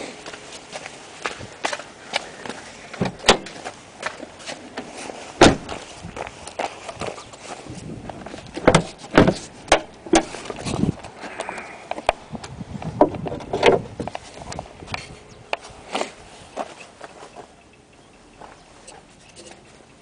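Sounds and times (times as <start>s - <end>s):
knocks and thumps: 8.6s - 10.3s.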